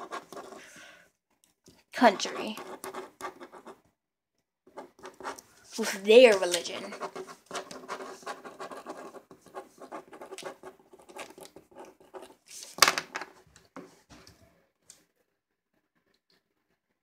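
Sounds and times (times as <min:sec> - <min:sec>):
pen scratching on paper: 0:00.0 - 0:00.8, 0:02.0 - 0:03.8, 0:04.7 - 0:12.7.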